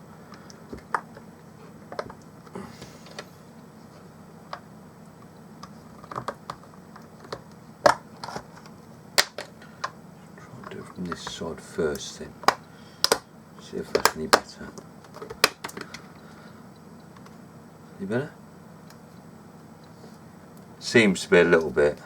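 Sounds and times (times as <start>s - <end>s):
plastic casing clicks and knocks: 6.0s - 8.5s, 9.2s - 10.0s, 12.4s - 13.2s, 14.0s - 16.0s.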